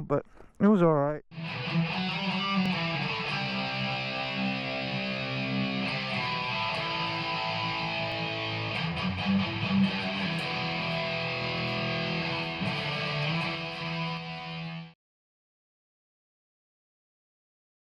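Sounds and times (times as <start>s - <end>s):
music with guitar: 1.3s - 15.0s.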